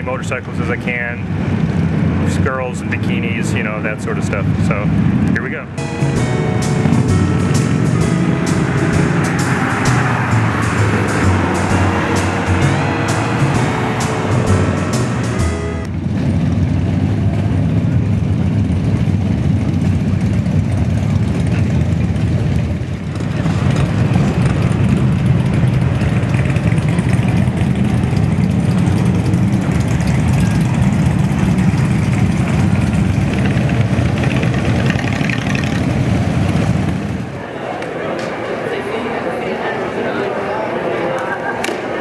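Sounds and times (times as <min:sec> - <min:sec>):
traffic engine rumble: 0:00.0 - 0:42.0
music: 0:05.8 - 0:16.1.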